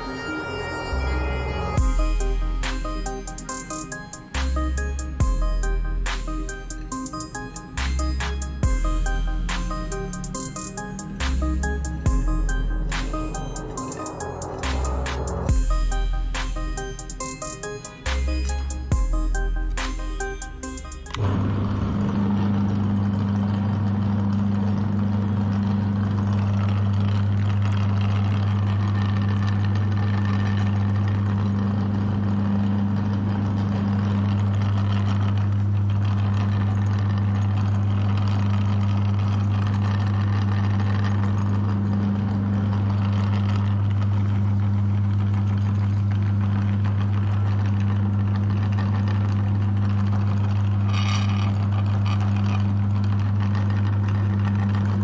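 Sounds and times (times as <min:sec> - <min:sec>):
meat grinder motor humming: 0:01.8 - 0:55.0.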